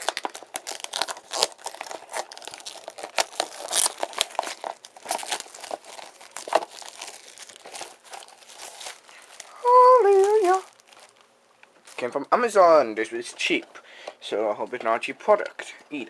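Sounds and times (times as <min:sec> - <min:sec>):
packaging tearing and crinkling: 0:00.0 - 0:12.2.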